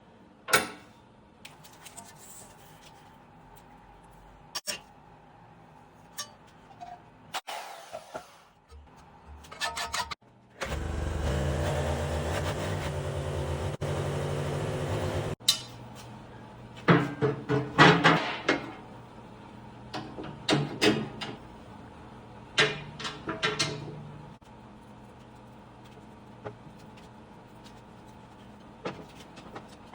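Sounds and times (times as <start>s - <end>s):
loud bursts of mechanical noise: 10.6s - 15.4s
machinery running: 10.6s - 15.4s.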